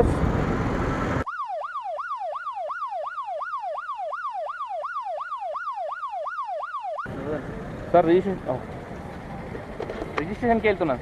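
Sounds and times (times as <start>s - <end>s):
wind and road noise: 0.0s - 1.3s, 6.9s - 11.0s
electronic siren wail: 1.2s - 7.1s.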